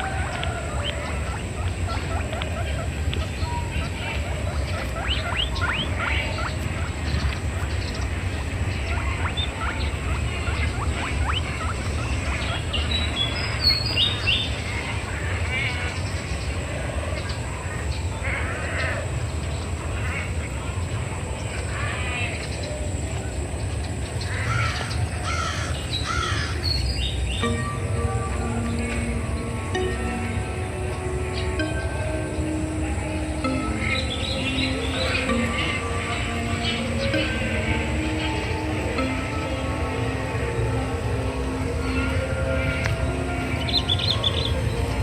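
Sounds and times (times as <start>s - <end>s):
background music: 0.0s - 21.8s, 22.9s - 45.0s
steady low rumble: 0.0s - 26.0s, 26.6s - 45.0s
small birds chirping: 0.0s - 45.0s
low rumble: 37.6s - 45.0s.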